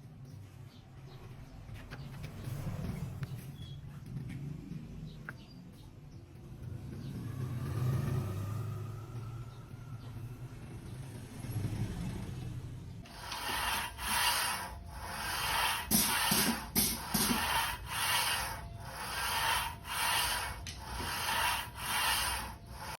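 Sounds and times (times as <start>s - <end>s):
rubbing on a hard surface: 13.1s - 23.0s.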